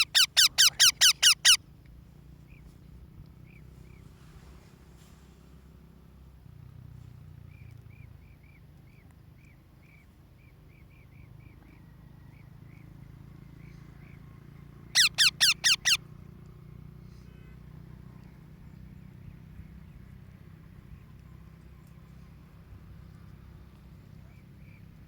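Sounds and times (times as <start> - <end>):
parrot sharp screeches: 0.0 - 1.6, 15.0 - 16.0
parrot soft chirps: 0.0 - 1.6, 15.0 - 16.0.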